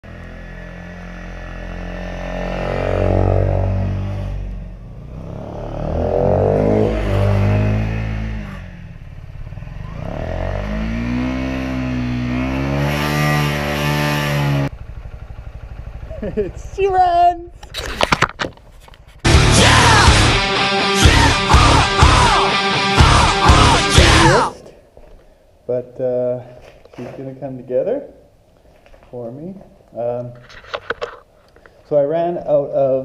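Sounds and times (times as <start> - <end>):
motorcycle engine revving: 0.0 - 16.8, 19.3 - 24.5.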